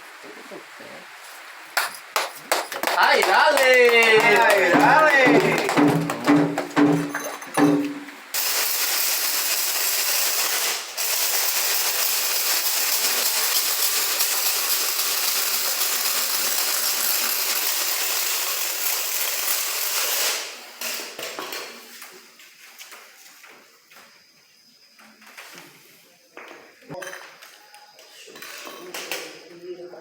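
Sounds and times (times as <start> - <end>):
loud steady hissing: 0.0 - 22.5.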